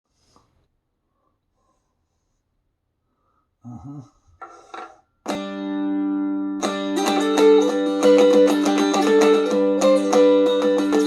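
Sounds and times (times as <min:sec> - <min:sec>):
dulcimer strummed: 0:04.4 - 0:11.0.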